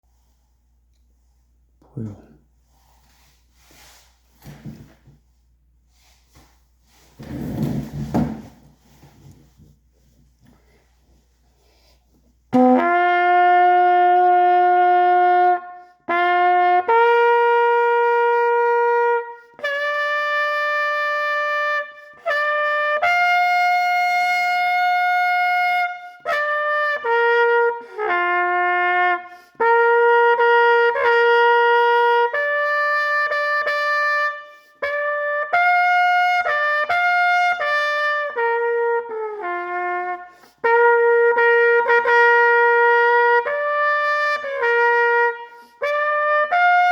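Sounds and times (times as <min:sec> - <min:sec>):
solo trumpet playing slow tune: 0:12.5 - 0:46.9.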